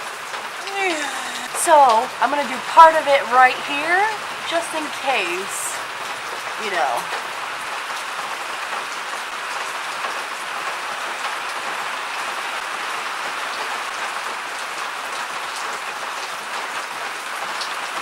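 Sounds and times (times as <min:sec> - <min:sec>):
heavy rain pouring: 0:00.0 - 0:18.0.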